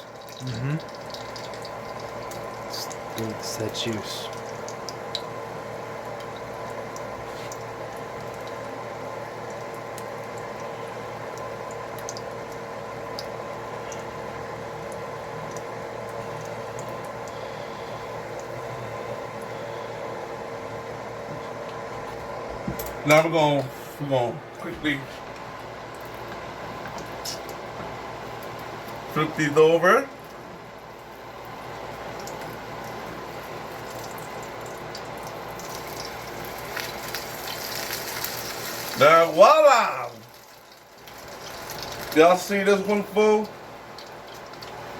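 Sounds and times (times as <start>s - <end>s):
grease popping: 0.0s - 19.6s, 30.2s - 44.9s
batter sizzling in oil: 0.0s - 20.3s, 24.9s - 44.9s.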